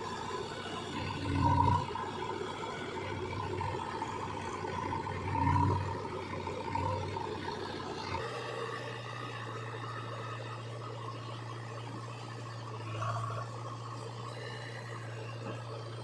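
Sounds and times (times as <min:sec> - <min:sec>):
diesel engines running: 0:00.0 - 0:16.0.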